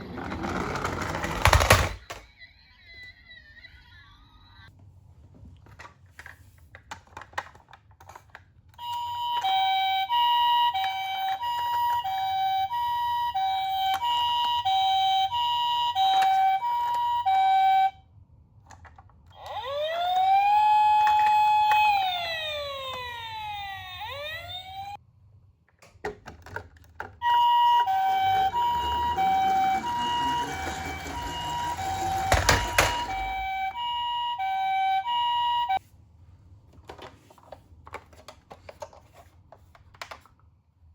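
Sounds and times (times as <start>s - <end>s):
rattling noise: 0.0s - 2.2s, 27.4s - 33.8s
toy electronic siren: 8.8s - 18.0s, 19.3s - 25.0s, 27.2s - 35.8s.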